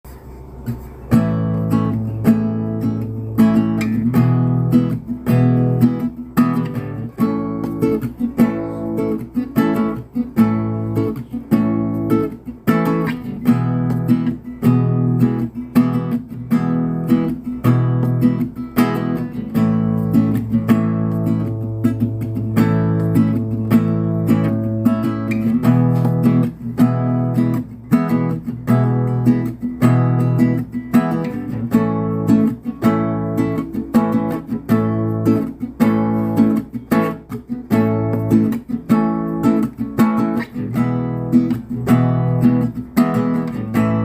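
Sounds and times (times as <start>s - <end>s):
acoustic guitar strumming chords: 0.1s - 44.0s.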